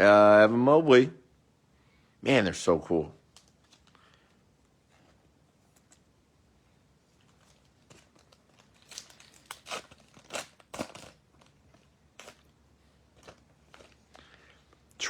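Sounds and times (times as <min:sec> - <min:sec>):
wrapper crinkling and tearing: 0:07.2 - 0:14.9.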